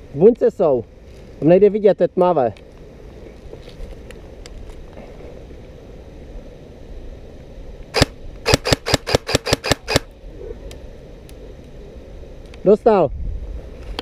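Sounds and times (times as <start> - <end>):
airsoft gun shots: 7.9 - 10.1.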